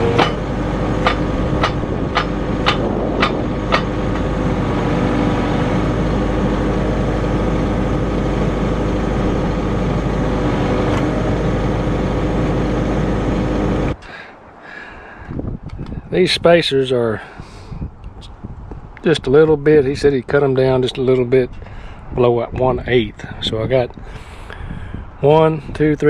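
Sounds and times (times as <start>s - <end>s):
excavator diesel engine running: 0.0s - 14.2s.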